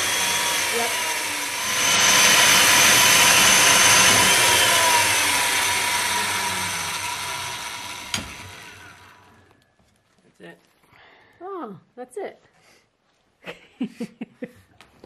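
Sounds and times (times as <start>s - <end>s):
mortiser motor high whine: 0.0s - 9.5s.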